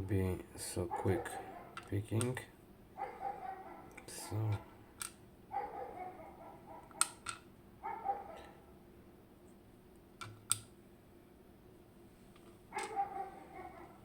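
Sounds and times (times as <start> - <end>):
metal lock parts clicking: 1.7 - 2.4, 6.8 - 7.5, 12.7 - 13.1.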